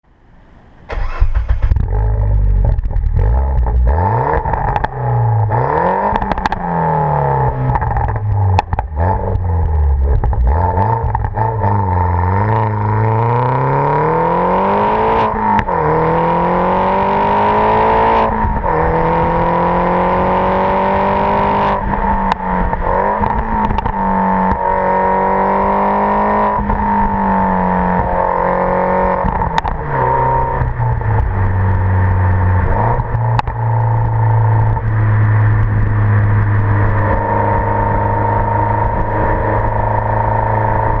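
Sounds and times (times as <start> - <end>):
car engine revving: 0.7 - 41.0
exhaust cracks: 0.9 - 13.2, 26.5 - 41.0.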